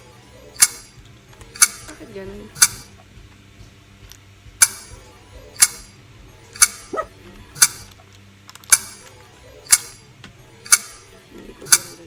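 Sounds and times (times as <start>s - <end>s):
sharp clicks: 5.6s - 5.9s, 7.6s - 9.1s, 9.7s - 10.0s, 10.6s - 11.0s.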